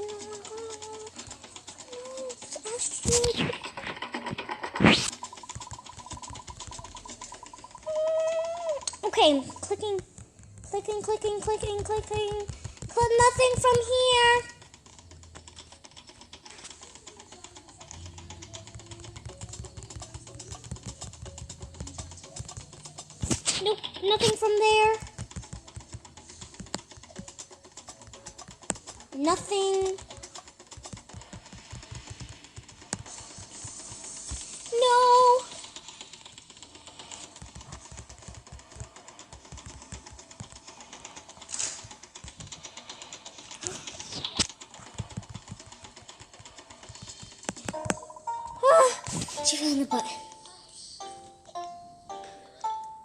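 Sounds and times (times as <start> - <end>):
computer keys clicking: 0.0 - 49.5.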